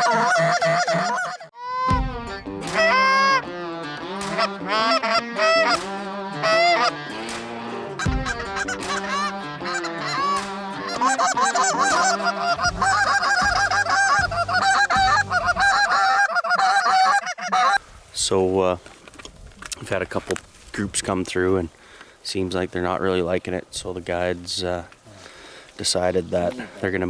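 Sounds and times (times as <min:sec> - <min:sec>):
geese honking: 0:02.7 - 0:17.8.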